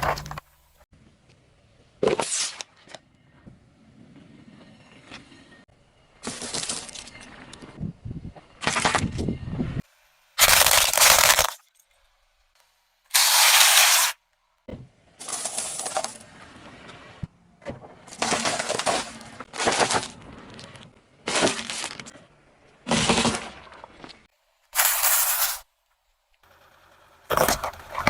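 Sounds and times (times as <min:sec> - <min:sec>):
tyre crushing drinks containers: 0:00.0 - 0:00.7, 0:10.4 - 0:11.6, 0:18.1 - 0:20.2, 0:27.3 - 0:28.0.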